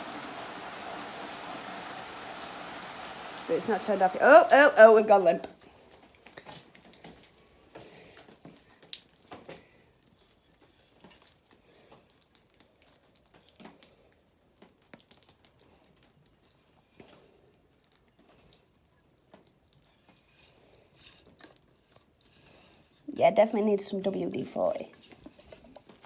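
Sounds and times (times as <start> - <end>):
sprinkler water dripping: 0.0 - 20.3.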